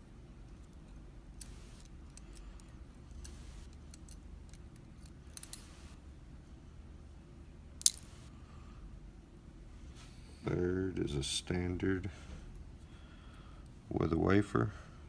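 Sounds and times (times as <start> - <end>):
metallic clicks of lock picking: 1.4 - 5.7.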